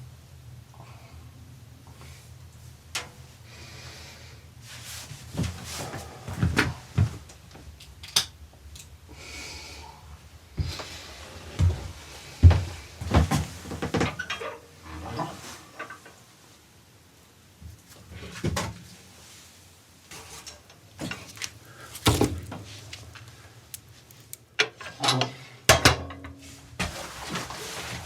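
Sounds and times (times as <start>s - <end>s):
objects knocking and thumping: 21.0s - 22.8s.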